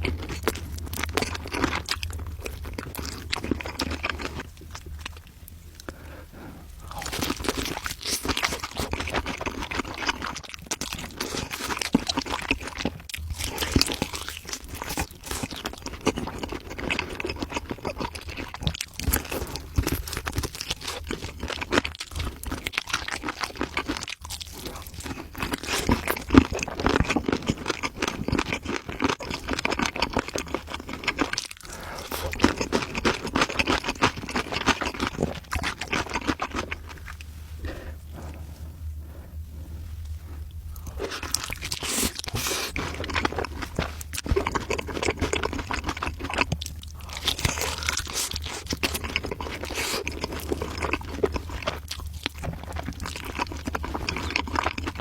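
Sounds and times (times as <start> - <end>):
crunchy food being chewed: 0.0 - 55.0.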